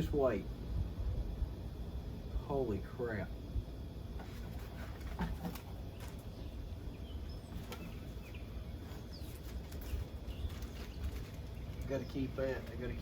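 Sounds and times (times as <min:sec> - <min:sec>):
low outdoor rumble: 0:00.0 - 0:13.0
faint bird chirps: 0:05.5 - 0:12.6
handling rustles and clicks: 0:09.0 - 0:12.9.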